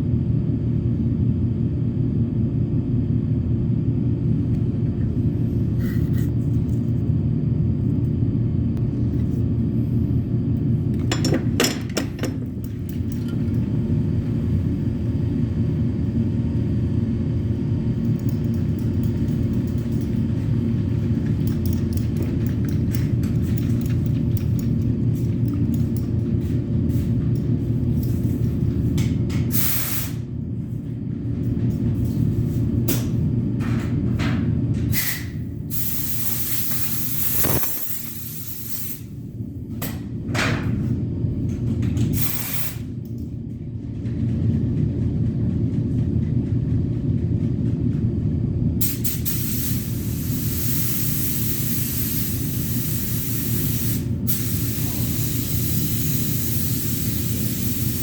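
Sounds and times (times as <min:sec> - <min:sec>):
spray gun hissing: 0:48.9 - 0:58.0.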